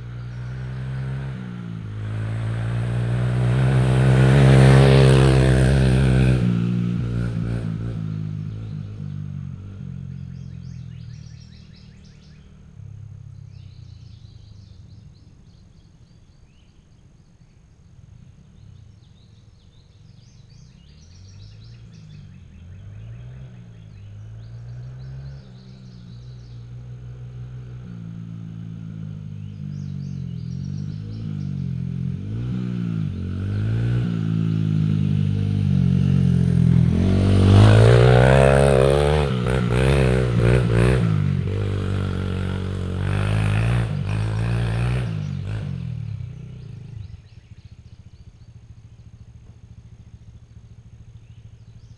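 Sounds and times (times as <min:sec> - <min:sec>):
dirt bike engine revving: 0:00.0 - 0:10.0, 0:22.0 - 0:51.9.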